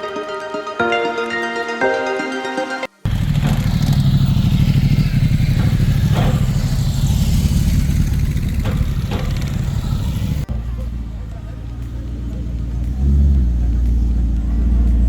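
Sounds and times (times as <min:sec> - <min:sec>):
plucked-string background music: 0:00.0 - 0:03.1
vehicle engine rumbling: 0:03.0 - 0:15.0.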